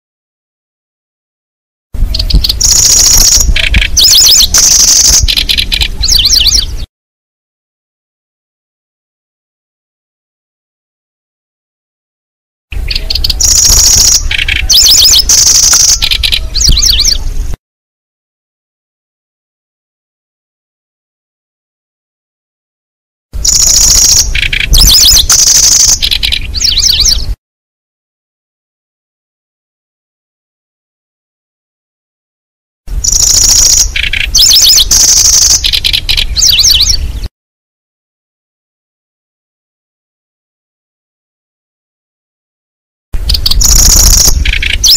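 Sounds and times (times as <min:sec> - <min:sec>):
recorded bird song: 0:02.0 - 0:06.9, 0:12.7 - 0:17.6, 0:23.4 - 0:27.4, 0:32.9 - 0:37.3, 0:43.2 - 0:44.9.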